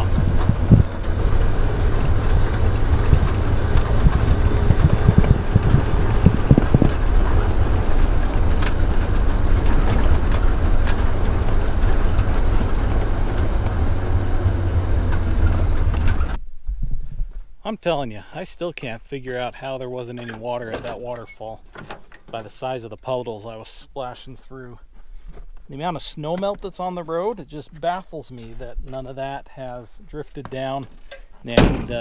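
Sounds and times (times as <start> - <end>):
engine and road rumble: 0.0 - 16.4, 30.8 - 32.0
truck knocks and rattles: 0.0 - 16.4, 30.5 - 32.0.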